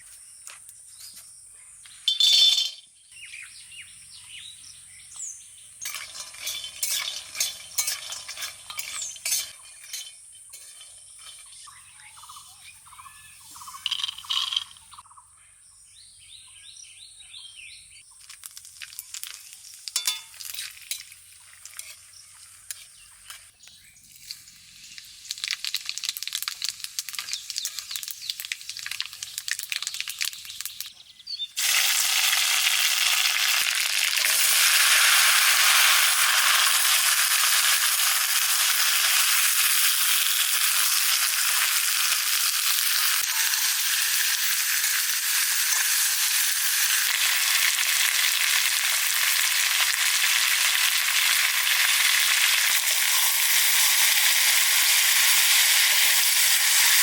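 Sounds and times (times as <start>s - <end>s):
food sizzling in hot oil: 5.8s - 12.4s, 18.2s - 30.9s, 31.6s - 57.0s.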